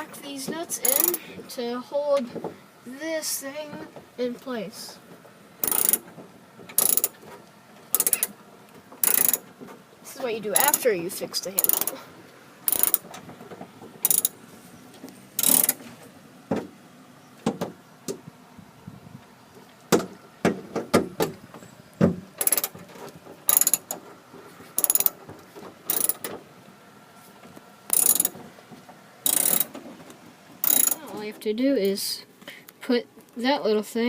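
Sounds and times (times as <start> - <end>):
ratcheting bursts: 0.8 - 1.2, 5.6 - 6.1, 6.7 - 7.2, 7.9 - 8.4, 9.0 - 9.5, 10.6 - 10.9, 11.6 - 12.0, 12.6 - 13.2, 14.0 - 14.4, 15.4 - 15.8, 22.4 - 22.8, 23.4 - 24.0, 24.8 - 25.2, 25.9 - 26.4, 27.9 - 28.4, 29.2 - 29.8, 30.6 - 31.1.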